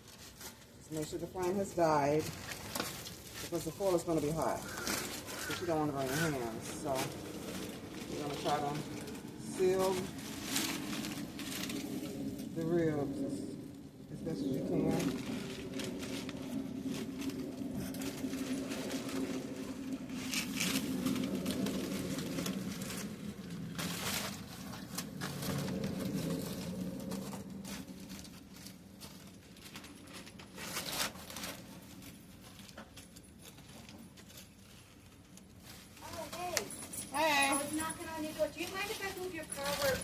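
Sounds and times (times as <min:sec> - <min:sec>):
aluminium foil crinkling: 0:00.0 - 0:40.0
low steady hum: 0:00.0 - 0:40.0.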